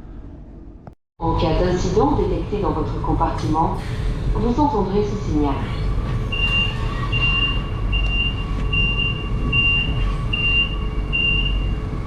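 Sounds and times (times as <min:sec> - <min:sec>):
train rumbling in tunnel: 0:00.0 - 0:12.0
high-pitched alarm beeps: 0:06.3 - 0:11.8.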